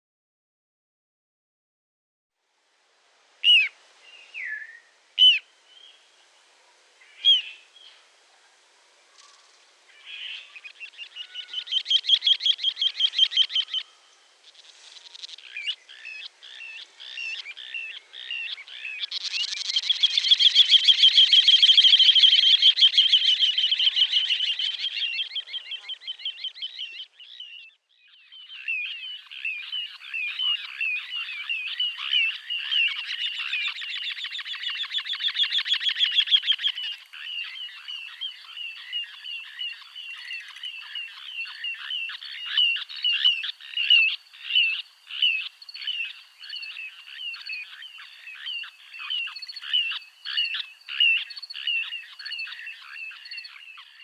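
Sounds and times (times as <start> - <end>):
bird chirps: 3.4 - 6.1, 7.0 - 8.0, 9.1 - 54.0.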